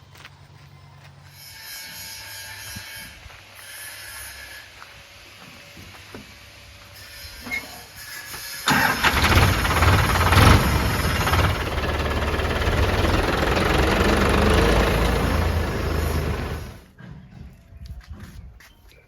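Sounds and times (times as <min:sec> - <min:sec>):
diesel engine running: 0:08.7 - 0:16.9.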